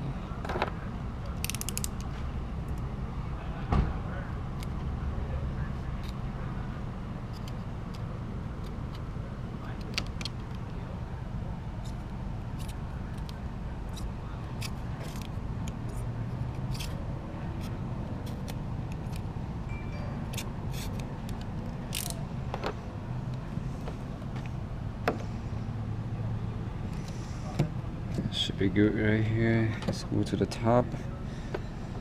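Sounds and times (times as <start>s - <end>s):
steady low hum: 0.0s - 32.0s
hand tools clicking and scraping: 11.8s - 17.0s, 20.3s - 22.2s.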